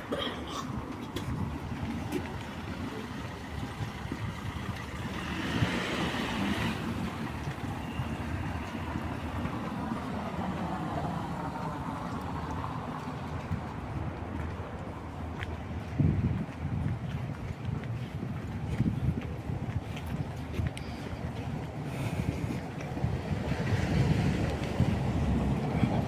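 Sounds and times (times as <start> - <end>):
traffic rumble: 0.0 - 26.0
vehicle passing with tyre hiss: 4.0 - 12.9, 23.0 - 26.0.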